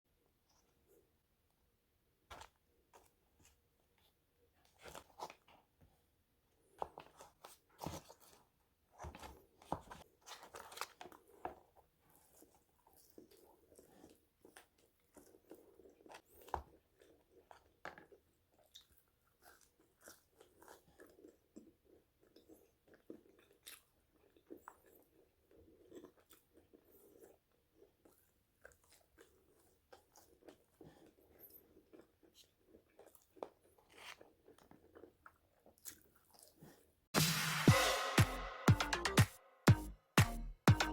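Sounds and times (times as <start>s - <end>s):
chewing crispy fries: 10.5s - 37.0s.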